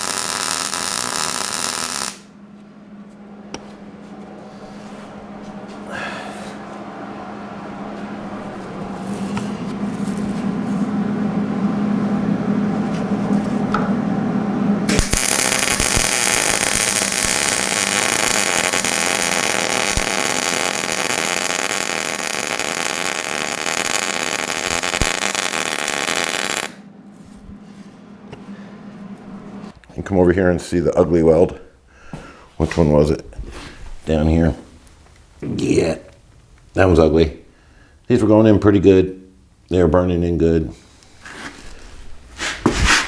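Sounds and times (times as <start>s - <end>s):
welding arc sizzling: 0.0s - 2.3s, 14.9s - 26.8s
steady low hum: 0.0s - 42.9s.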